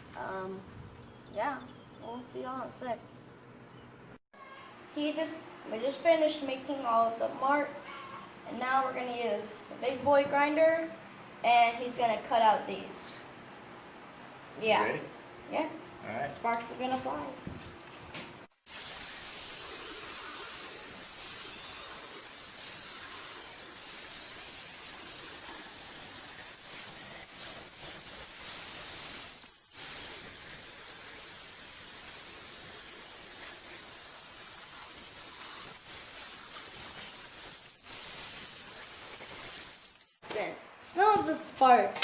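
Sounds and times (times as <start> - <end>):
angle grinder cutting metal: 18.7 - 40.2.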